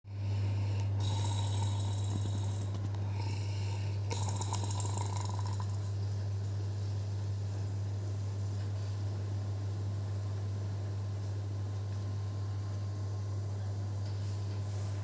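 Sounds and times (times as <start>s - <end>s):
steady low hum: 0.1s - 15.0s
woman snoring loudly: 0.8s - 5.8s.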